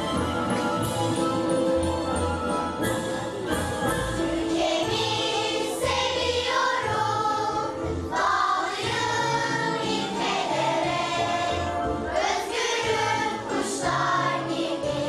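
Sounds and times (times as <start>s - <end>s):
instrumental accompaniment: 0.0s - 15.0s
choir singing: 4.3s - 15.0s.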